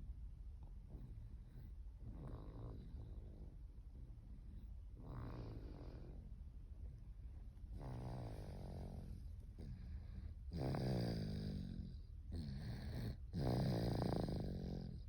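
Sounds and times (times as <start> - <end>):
baby snoring: 7.8 - 11.7, 12.4 - 15.0.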